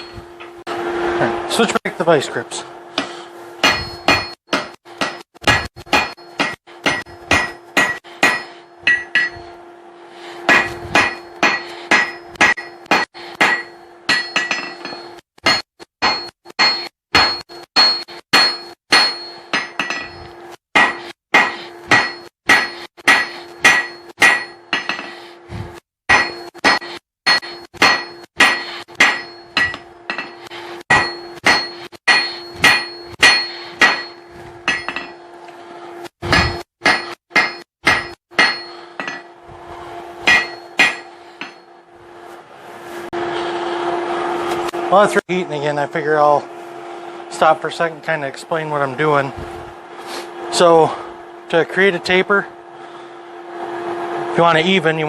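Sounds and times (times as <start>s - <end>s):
anvil ringing: 0.0s - 0.6s, 3.0s - 9.8s, 10.4s - 25.2s, 26.1s - 35.4s, 36.0s - 42.0s
hammer striking steel on anvil: 0.0s - 0.7s, 3.0s - 9.7s, 10.4s - 25.2s, 26.1s - 42.3s.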